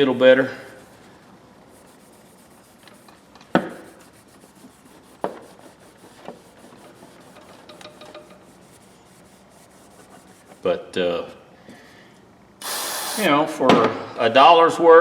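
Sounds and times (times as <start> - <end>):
faint rubbing: 0.0 - 10.7.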